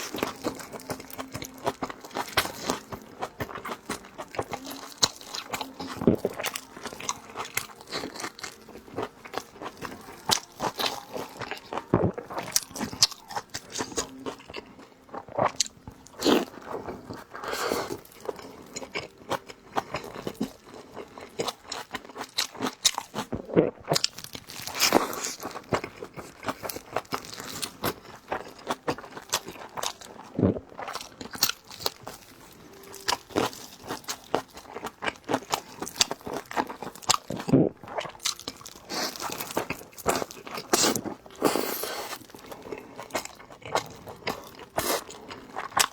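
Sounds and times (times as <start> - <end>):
person chewing food: 0.0 - 45.9.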